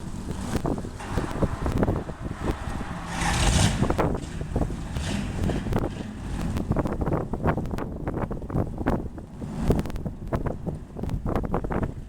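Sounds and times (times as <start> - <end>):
car engine and road noise: 0.0 - 12.0
wind buffeting microphone: 0.0 - 12.0.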